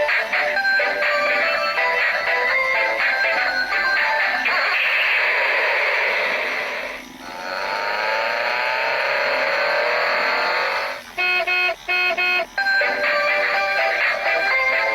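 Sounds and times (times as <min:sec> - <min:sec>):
music with steady notes: 0:00.0 - 0:04.4, 0:12.6 - 0:14.9
vehicle engine revving: 0:07.6 - 0:11.1.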